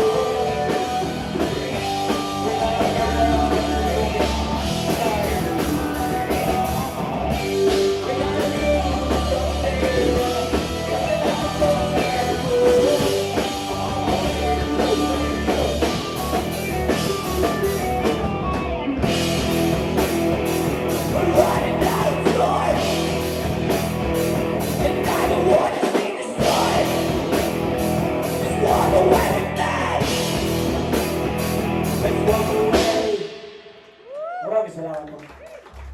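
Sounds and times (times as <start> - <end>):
lead singer singing: 0.0 - 17.4, 20.9 - 23.3, 24.6 - 30.6, 31.8 - 33.6
guitars: 0.0 - 33.4
drum kit: 0.0 - 34.3.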